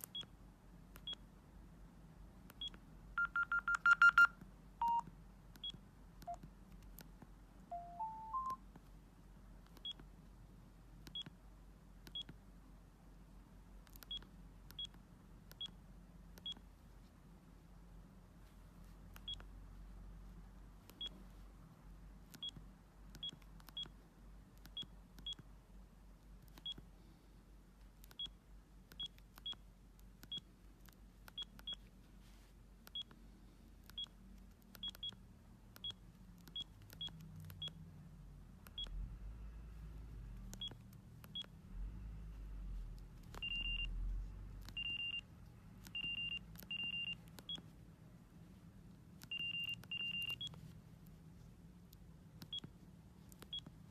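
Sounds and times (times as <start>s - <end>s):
mobile phone beeping: 2.6s - 6.4s, 7.7s - 8.6s, 43.3s - 44.0s, 44.7s - 47.7s, 49.2s - 50.6s.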